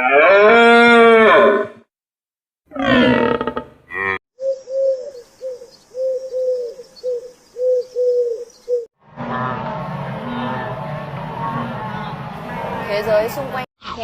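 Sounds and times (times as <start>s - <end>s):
dove cooing: 4.4s - 8.9s.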